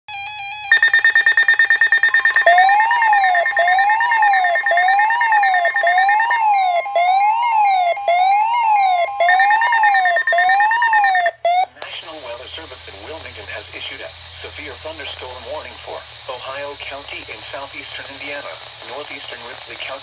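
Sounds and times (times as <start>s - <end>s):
rapid pulsing beeps: 0.7s - 11.3s
siren tone sweeping up and down: 0.7s - 11.4s.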